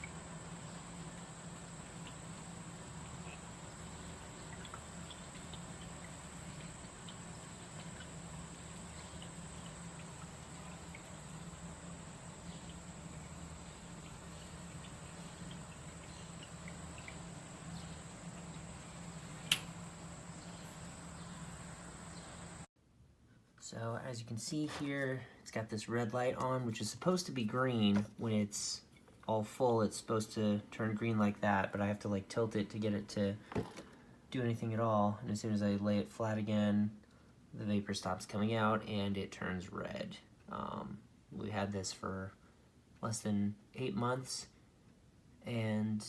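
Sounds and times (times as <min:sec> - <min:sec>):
faint ticks or drips: 0:00.0 - 0:18.9
faint low hum: 0:00.0 - 0:22.7
sharp click: 0:19.4 - 0:19.8.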